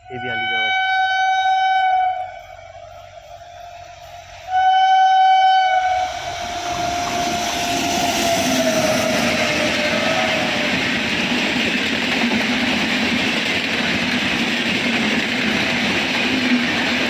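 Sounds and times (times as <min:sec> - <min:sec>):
locomotive air horn blasts: 0:00.0 - 0:10.7
train rumbling and clattering: 0:00.0 - 0:17.0.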